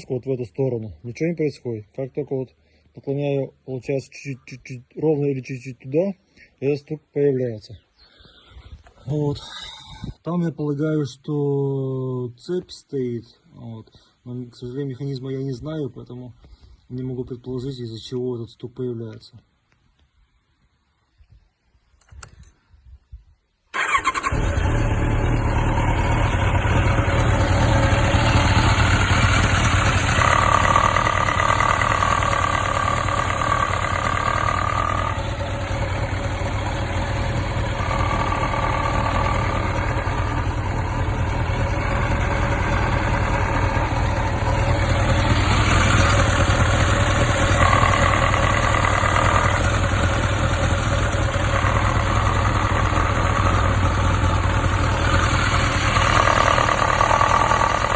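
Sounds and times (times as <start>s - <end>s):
motorcycle engine idling: 23.8s - 57.9s
high engine whine: 24.2s - 57.9s.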